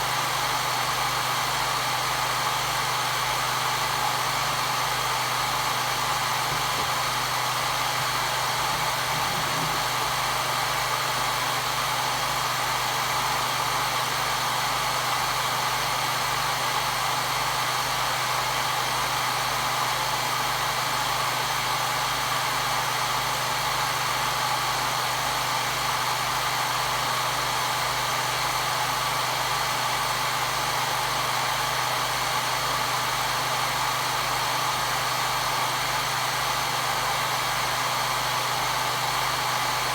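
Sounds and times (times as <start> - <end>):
hair dryer running: 0.8 - 15.4.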